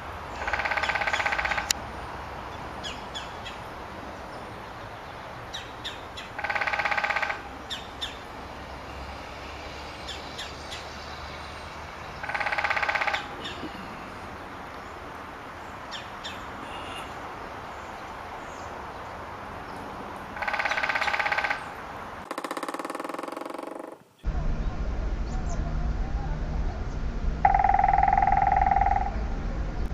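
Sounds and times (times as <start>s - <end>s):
woodpecker drumming: 0.3s - 1.8s, 5.8s - 8.2s, 12.2s - 13.8s, 20.4s - 24.3s, 27.4s - 29.2s
bird chirps: 26.8s - 29.2s.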